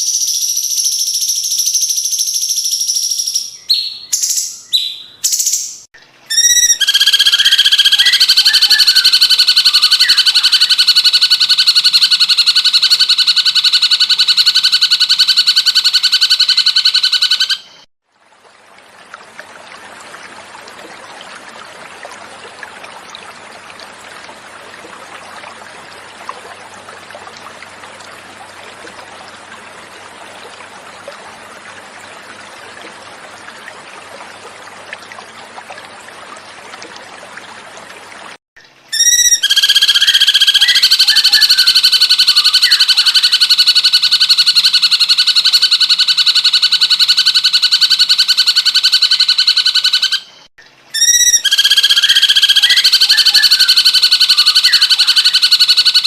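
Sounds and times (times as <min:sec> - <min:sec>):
bird trilling song: 0:00.0 - 0:11.0, 0:38.9 - 0:43.5, 0:51.0 - 0:55.8
running water: 0:18.0 - 0:56.0.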